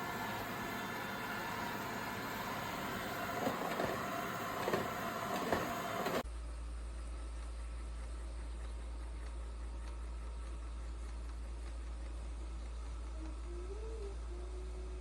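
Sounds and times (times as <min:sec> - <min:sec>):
robot vacuum running: 0:00.0 - 0:06.2.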